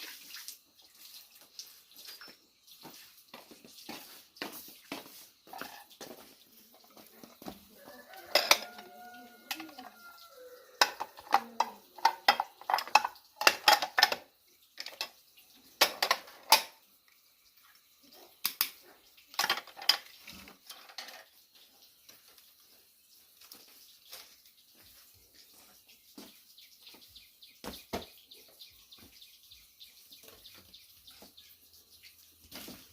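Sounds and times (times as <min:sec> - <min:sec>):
dishes and utensils clattering: 0:05.4 - 0:06.3, 0:06.9 - 0:16.8, 0:19.3 - 0:21.6.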